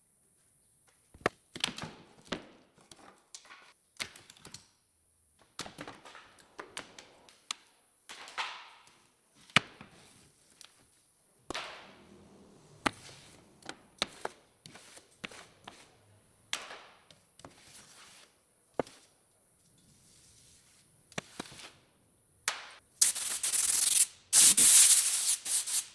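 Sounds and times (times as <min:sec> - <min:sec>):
scraps sliding across table: 0:17.5 - 0:19.1, 0:19.8 - 0:21.7.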